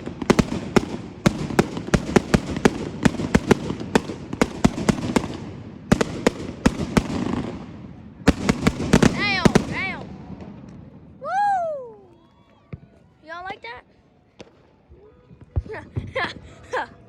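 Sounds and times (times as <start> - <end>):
fireworks pops and cracks: 0.0 - 7.7, 8.3 - 10.9.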